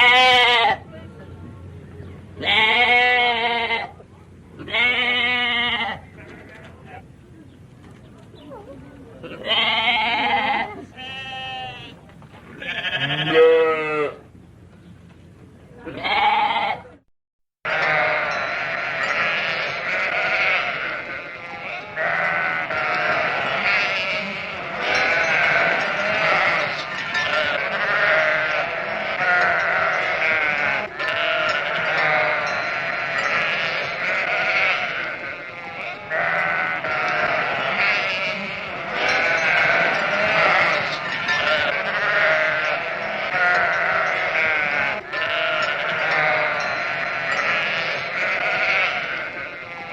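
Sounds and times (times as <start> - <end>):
sheep bleating: 2.4 - 3.9, 4.6 - 7.0, 9.3 - 14.2, 15.9 - 16.9, 17.7 - 49.9.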